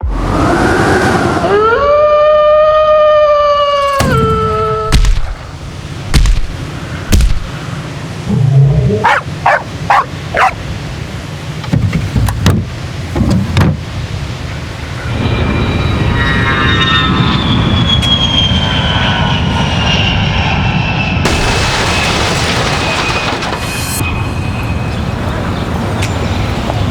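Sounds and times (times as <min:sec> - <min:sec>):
steady rumble: 0:04.6 - 0:25.9
sharp knocks: 0:06.1 - 0:07.5
short yelps: 0:09.0 - 0:10.6
falling squeal: 0:15.0 - 0:21.2, 0:21.8 - 0:25.2.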